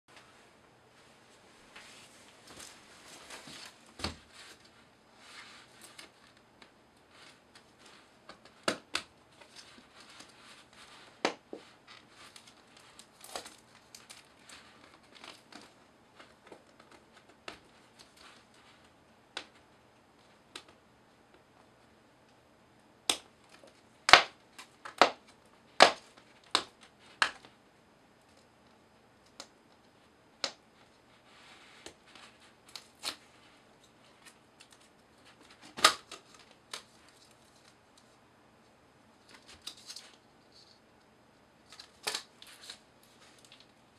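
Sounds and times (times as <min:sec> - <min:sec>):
packaging crinkling and rustling: 0:09.3 - 0:18.8.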